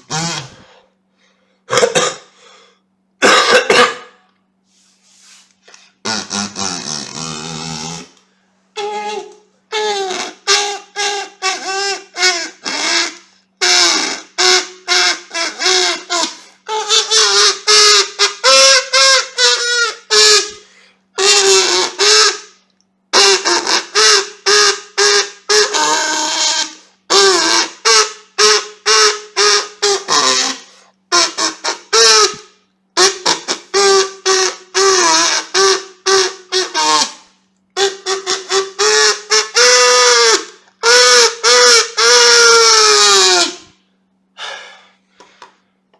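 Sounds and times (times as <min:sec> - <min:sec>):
kazoo playing buzzy phrases: 0:00.0 - 0:43.8.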